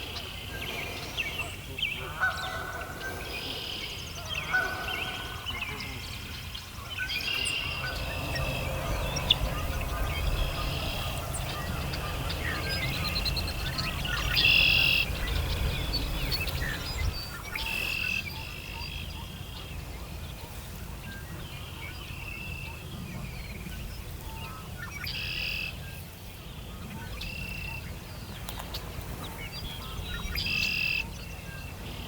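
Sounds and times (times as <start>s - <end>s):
birds calling: 0.0s - 32.0s
steady low rumble: 6.2s - 20.4s.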